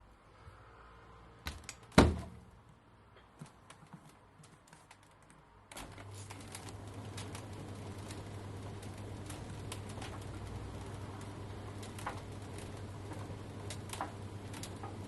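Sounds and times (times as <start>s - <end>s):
dryer clicks: 5.7s - 15.0s
dryer motor humming: 5.7s - 15.0s.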